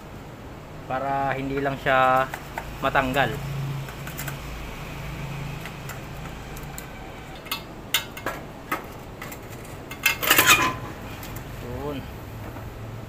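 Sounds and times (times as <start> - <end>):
sharp clicks of metal parts: 2.1 - 4.5, 5.6 - 11.5
metallic clatter: 5.5 - 11.3.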